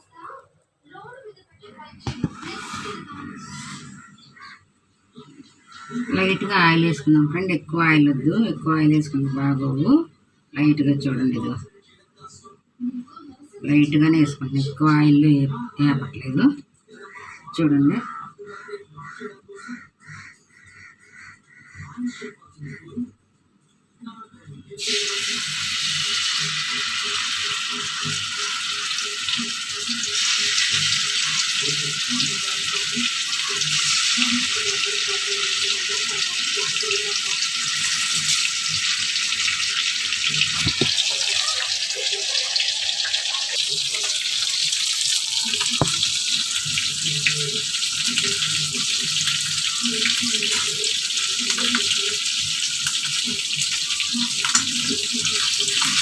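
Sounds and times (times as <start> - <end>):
fish sizzling in a pan: 24.8 - 56.0.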